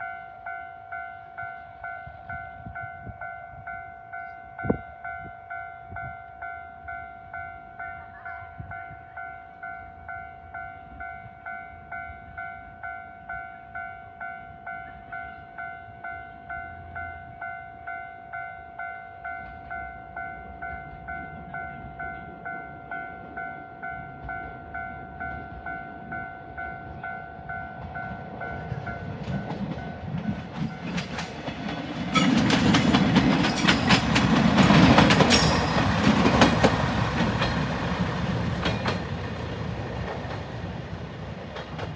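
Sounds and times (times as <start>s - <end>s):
diesel train rumble: 28.3s - 41.9s
level crossing warning bell: 32.1s - 39.5s.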